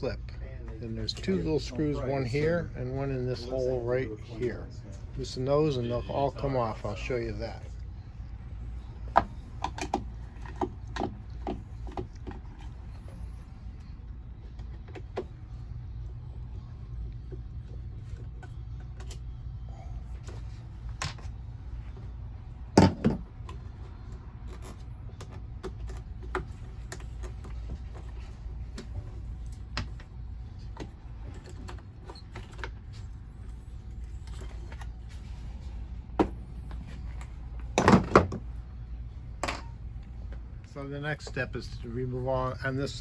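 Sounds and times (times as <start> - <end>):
steady low hum: 0.0 - 43.0.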